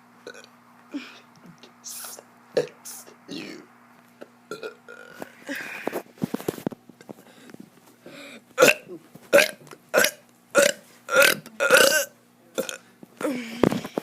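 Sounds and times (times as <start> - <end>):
child burping: 8.6 - 13.5.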